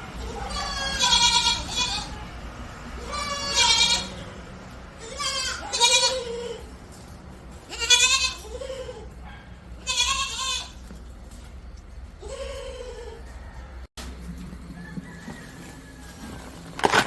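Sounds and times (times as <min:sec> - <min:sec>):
goats bleating: 0:00.1 - 0:02.4, 0:03.0 - 0:06.8, 0:07.6 - 0:09.2, 0:09.8 - 0:10.8, 0:12.2 - 0:13.3.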